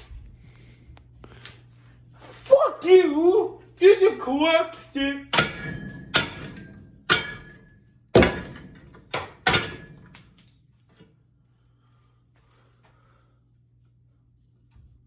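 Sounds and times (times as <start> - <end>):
sharp blows with ringing rattle: 5.3 - 11.1.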